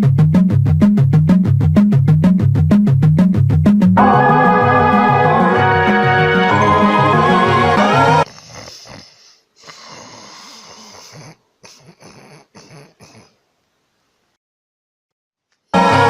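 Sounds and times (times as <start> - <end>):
background music: 0.0 - 8.2, 15.8 - 16.0
cat snoring: 8.3 - 13.4.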